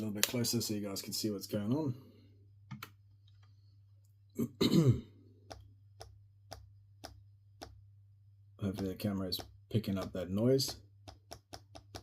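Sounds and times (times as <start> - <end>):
person clearing throat: 4.4 - 5.2.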